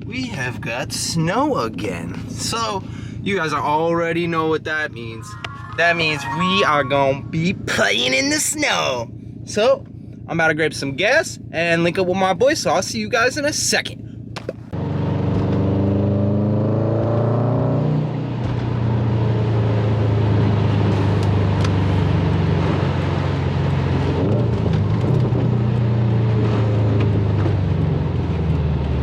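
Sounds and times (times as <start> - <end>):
car engine accelerating: 14.0 - 29.0.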